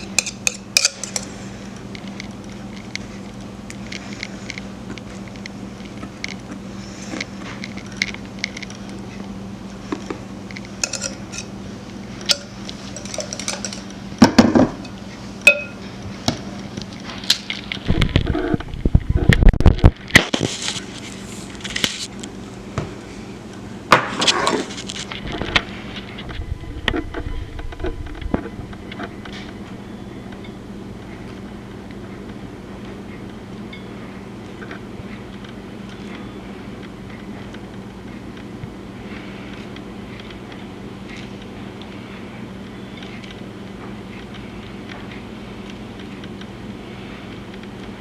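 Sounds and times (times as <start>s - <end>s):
dishes and utensils clinking: 0.0s - 1.4s, 10.5s - 11.6s, 12.2s - 15.9s
steady low hum: 0.0s - 48.0s.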